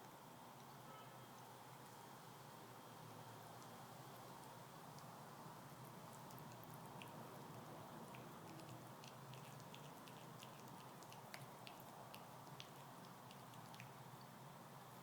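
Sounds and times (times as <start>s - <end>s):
dog gnawing on wooden stick: 6.2s - 14.0s.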